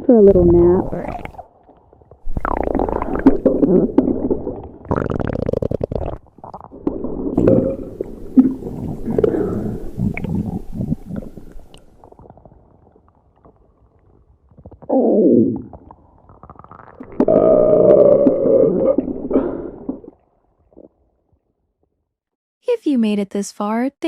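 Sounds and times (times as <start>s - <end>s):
stomach gurgling: 0.0s - 21.4s.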